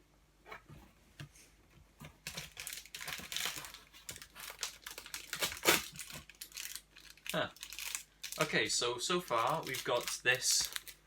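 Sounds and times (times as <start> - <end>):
packaging crinkling and rustling: 2.0 - 11.0.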